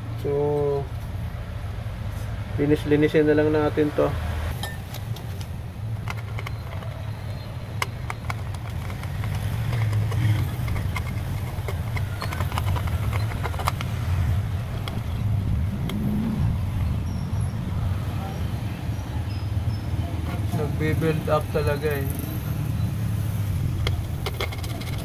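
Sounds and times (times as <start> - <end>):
low motor rumble: 5.1 - 19.9.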